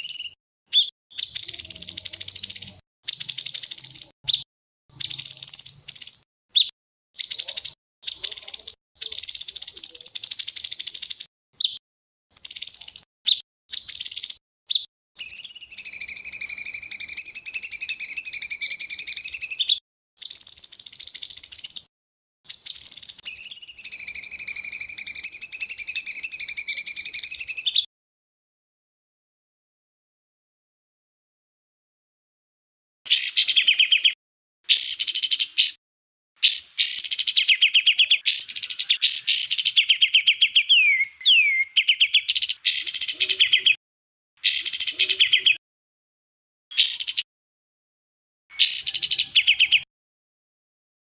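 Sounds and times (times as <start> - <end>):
songbird buzzy trills: 38.2 - 42.2.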